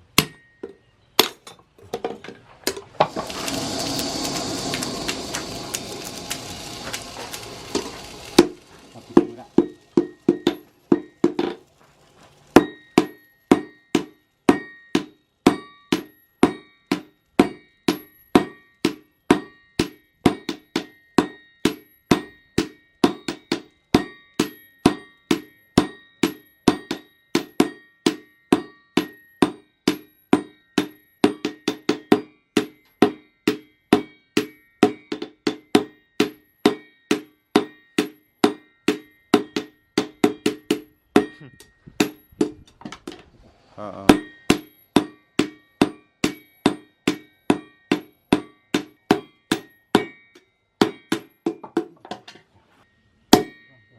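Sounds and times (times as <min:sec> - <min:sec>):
hammer striking steel on anvil: 0:00.0 - 0:01.6, 0:03.2 - 0:43.2, 0:44.1 - 0:52.4, 0:53.3 - 0:53.9
steady rushing noise: 0:03.1 - 0:10.9.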